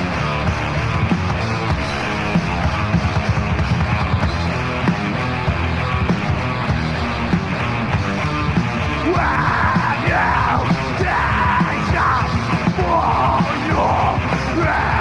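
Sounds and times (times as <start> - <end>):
death metal band playing: 0.0 - 15.0
growled vocals: 9.0 - 15.0.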